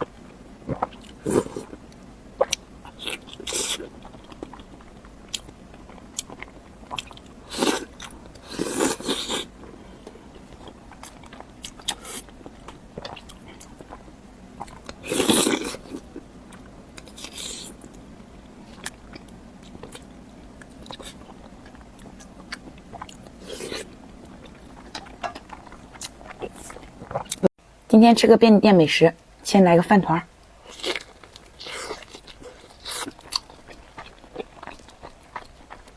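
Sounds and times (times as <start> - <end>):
person chewing and biting: 2.4 - 9.5, 10.4 - 18.0, 18.7 - 27.5, 30.7 - 35.9.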